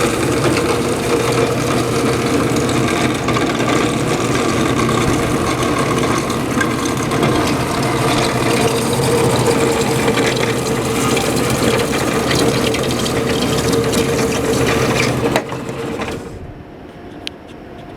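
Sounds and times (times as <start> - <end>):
bandsaw running: 0.0 - 16.4.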